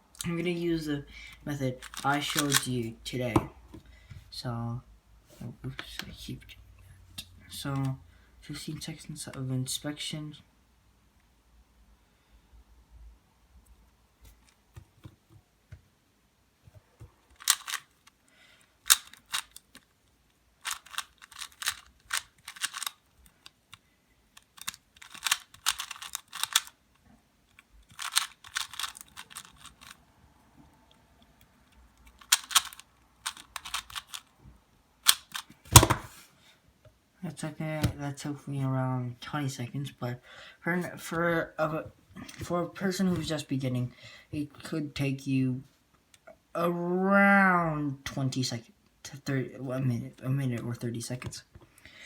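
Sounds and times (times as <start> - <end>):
puzzle cube plastic clicks: 1.2 - 2.9, 17.3 - 30.0, 31.3 - 34.3, 35.0 - 36.1.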